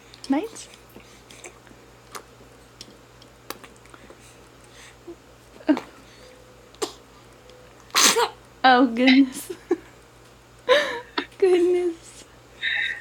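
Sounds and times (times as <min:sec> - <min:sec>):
toddler mouth clicks and smacks: 0:00.1 - 0:04.2.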